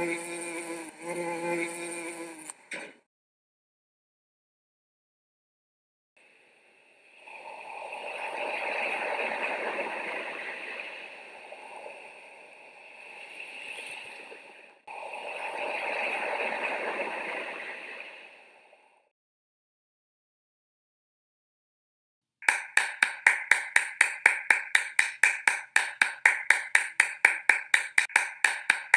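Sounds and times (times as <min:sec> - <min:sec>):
rushing gurgling water: 0:07.2 - 0:18.9.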